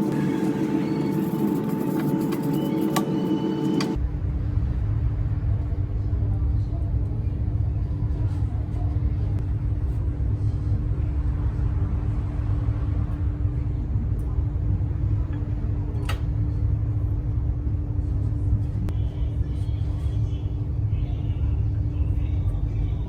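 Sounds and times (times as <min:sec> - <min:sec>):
steady hum: 0:00.0 - 0:23.0.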